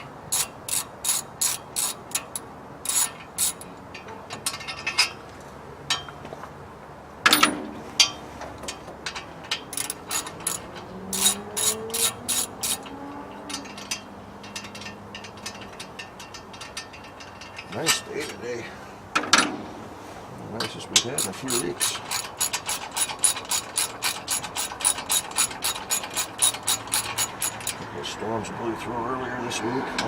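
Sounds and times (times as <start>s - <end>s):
ratchet wrench clicking: 0.0s - 3.7s, 9.8s - 12.9s, 21.2s - 27.8s
metallic clank: 0.0s - 5.2s, 7.3s - 18.1s, 21.0s - 27.8s.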